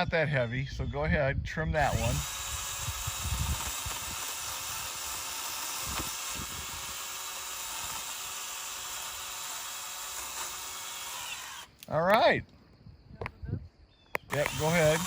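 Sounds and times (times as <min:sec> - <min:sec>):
electric pole saw cutting branch: 0:01.8 - 0:11.8, 0:14.2 - 0:15.0.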